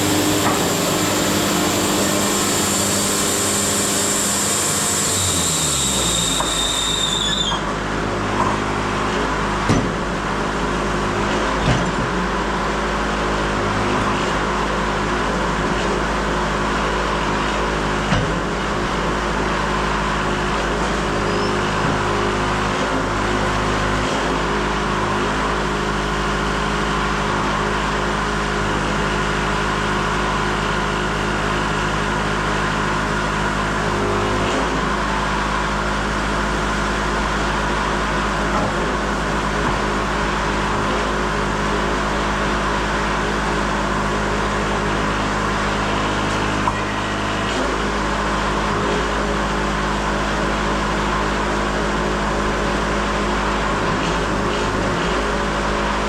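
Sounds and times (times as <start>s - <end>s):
bandsaw blade whine: 0.0s - 7.6s
sawmill droning: 0.0s - 11.6s.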